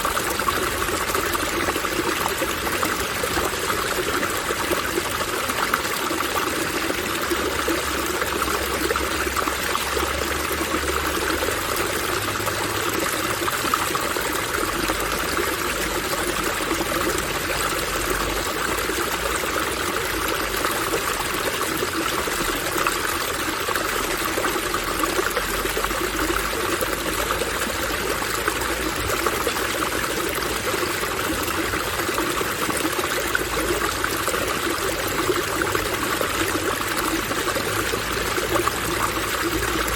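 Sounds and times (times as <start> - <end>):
water running and splashing: 0.0 - 39.9.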